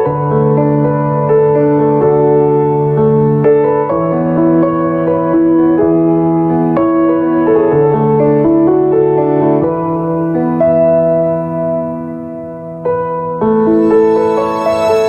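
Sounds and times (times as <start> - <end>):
slow gentle piano music: 0.0 - 15.0.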